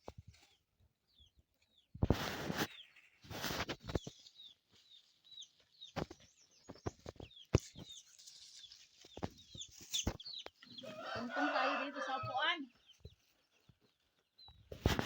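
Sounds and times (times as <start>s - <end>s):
birds chirping: 0.0s - 15.0s
rustling: 2.0s - 11.4s.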